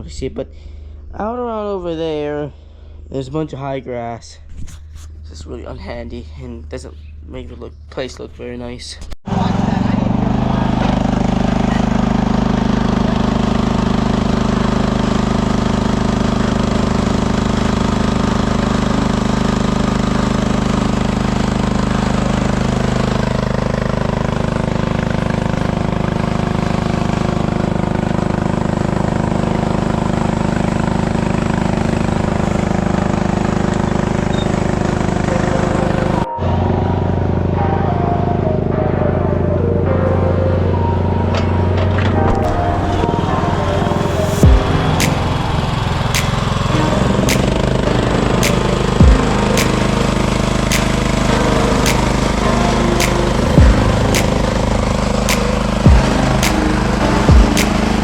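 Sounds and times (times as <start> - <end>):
tractor engine running: 9.2 - 58.0.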